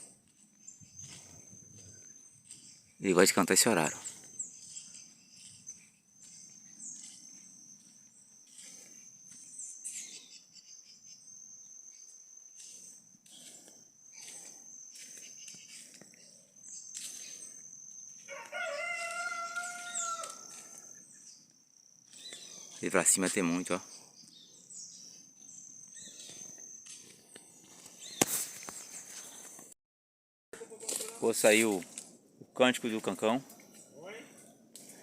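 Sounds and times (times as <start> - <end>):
birds chirping: 0.0 - 29.7
rooster crowing: 18.3 - 20.9.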